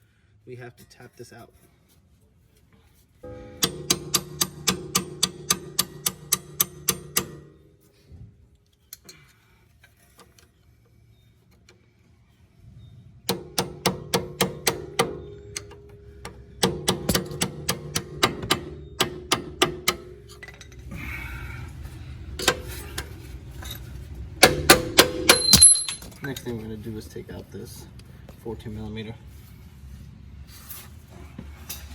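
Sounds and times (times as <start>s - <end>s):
hammer striking metal bolt: 3.3s - 7.9s, 13.3s - 21.0s, 22.4s - 26.2s.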